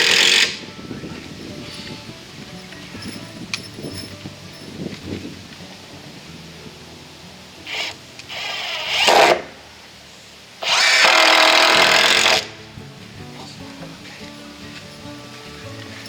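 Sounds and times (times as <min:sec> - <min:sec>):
power drill running: 0:00.0 - 0:00.8, 0:07.7 - 0:09.5, 0:10.6 - 0:12.5.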